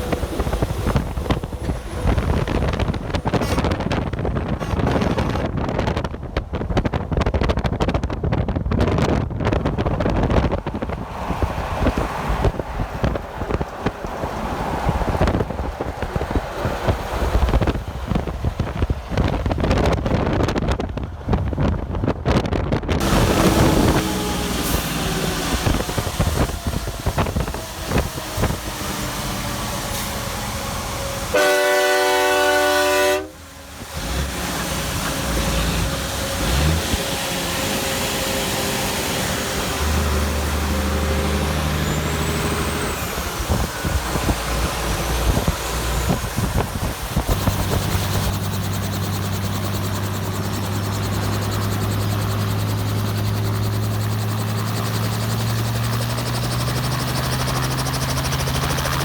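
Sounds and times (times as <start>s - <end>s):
highway traffic: 0.0s - 59.0s
wind buffeting microphone: 0.0s - 59.0s
truck train horn blast: 3.3s - 5.7s, 28.7s - 41.3s.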